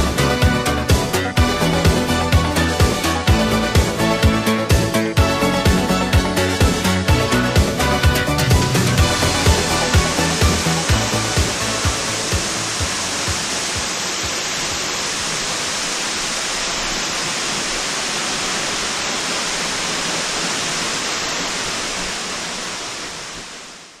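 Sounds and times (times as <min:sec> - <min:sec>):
musical beat: 0:00.0 - 0:14.8
waterfall rushing: 0:00.0 - 0:24.0.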